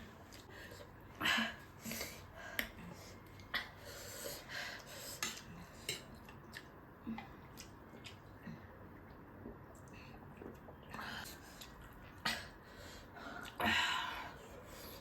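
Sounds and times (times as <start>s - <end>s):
chewing and mouth smacks: 5.2s - 11.0s.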